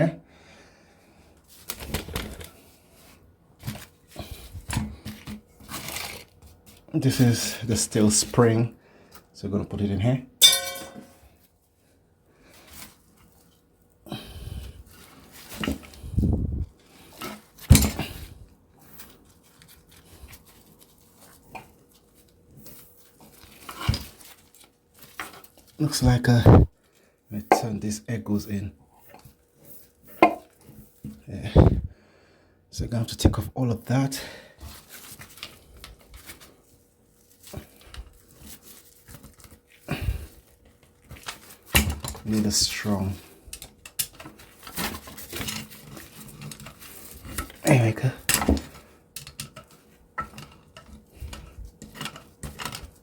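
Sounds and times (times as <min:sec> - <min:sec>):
hand tools clicking and knocking: 0:10.4 - 0:11.2, 0:48.2 - 0:53.0
scrap metal clattering: 0:10.4 - 0:11.3.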